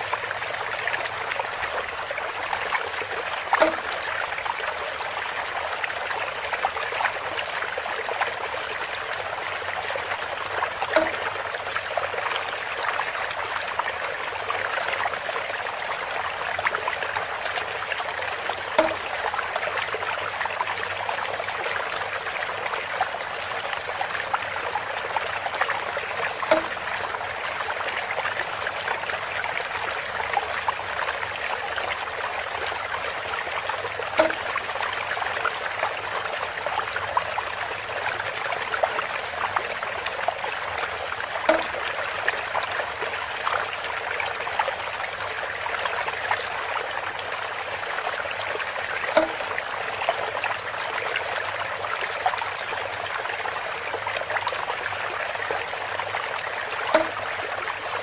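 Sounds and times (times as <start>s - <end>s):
water trickling through bamboo spout: 0.0s - 58.0s.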